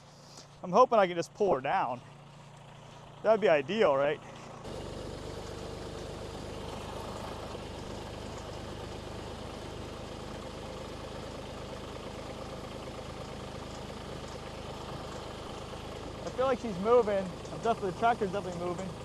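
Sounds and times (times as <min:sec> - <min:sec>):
tractor diesel engine running: 0:00.0 - 0:19.0.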